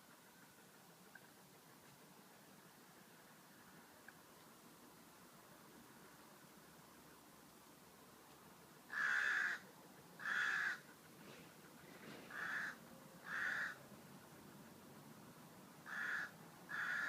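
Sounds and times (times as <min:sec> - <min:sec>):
crow cawing: 0:08.9 - 0:09.6, 0:10.2 - 0:10.9, 0:12.3 - 0:13.8, 0:15.8 - 0:17.0.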